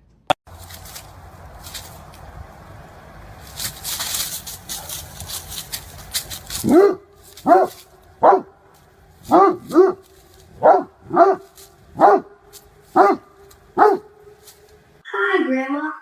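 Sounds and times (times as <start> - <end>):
dog barking: 6.6 - 8.6, 9.3 - 14.3.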